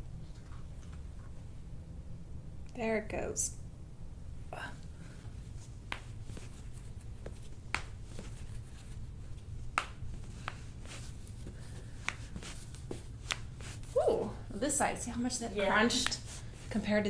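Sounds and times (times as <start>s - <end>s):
low room hum: 0.0s - 17.0s.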